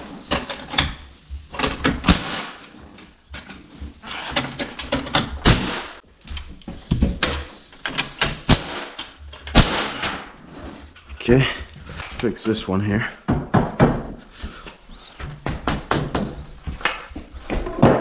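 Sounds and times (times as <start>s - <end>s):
rustling and scraping: 0.0s - 18.0s
knocks and clunks on wall: 13.2s - 14.2s.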